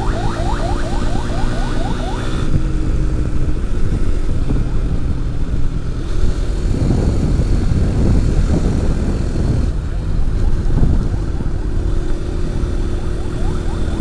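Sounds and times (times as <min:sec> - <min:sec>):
emergency siren yelping: 0:00.0 - 0:02.5, 0:09.9 - 0:14.0
motorcycle engine rumble: 0:00.0 - 0:14.0
wind blasting microphone: 0:00.0 - 0:14.0.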